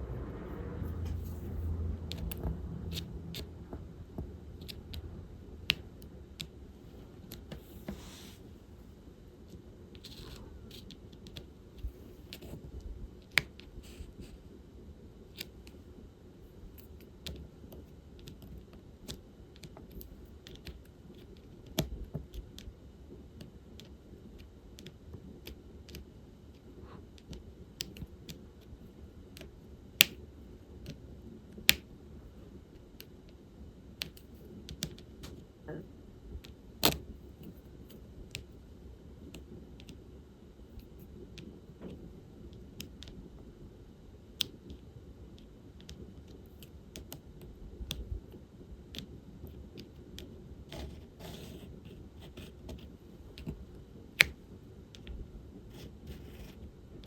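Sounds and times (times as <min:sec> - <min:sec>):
low room hum: 0:00.0 - 0:57.0
small plastic clicks and taps: 0:23.4 - 0:26.0, 0:34.0 - 0:35.4, 0:44.4 - 0:44.8, 0:45.4 - 0:48.1, 0:54.2 - 0:55.2.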